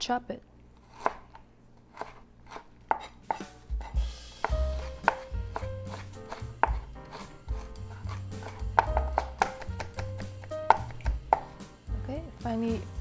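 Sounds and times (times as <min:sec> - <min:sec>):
knife chopping on cutting board: 0:02.0 - 0:11.6
background music with bass: 0:03.9 - 0:13.0.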